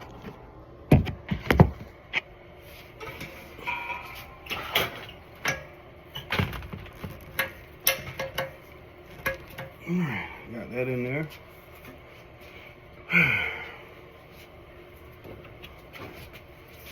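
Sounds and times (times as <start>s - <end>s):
clicks and knocks of parts: 4.5s - 9.8s.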